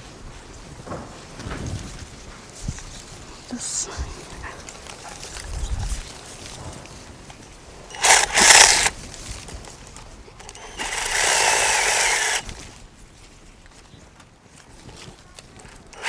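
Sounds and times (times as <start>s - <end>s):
electric chainsaw cutting: 7.9s - 9.0s, 10.5s - 12.6s.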